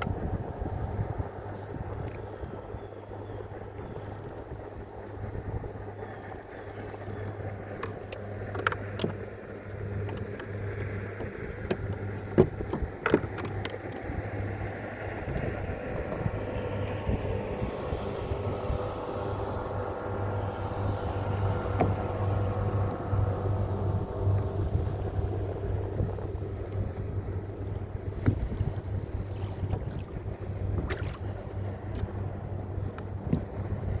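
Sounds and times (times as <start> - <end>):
boat engine humming: 0.0 - 34.0
higher engine tone: 5.4 - 34.0
knocks and clunks: 10.0 - 13.8, 21.7 - 22.2.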